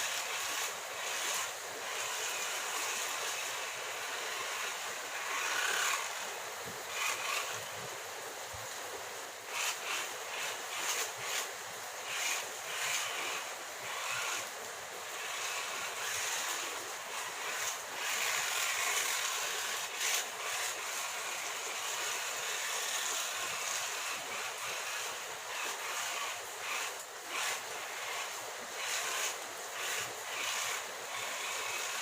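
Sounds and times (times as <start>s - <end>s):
rc car electric motor whine: 0.0s - 8.0s, 9.4s - 32.0s.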